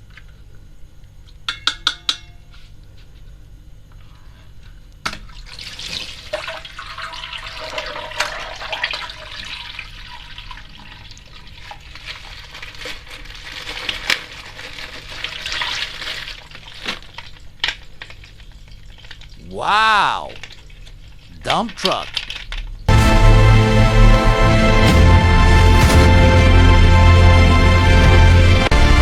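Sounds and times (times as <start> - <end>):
water pouring and splashing: 5.3 - 19.4.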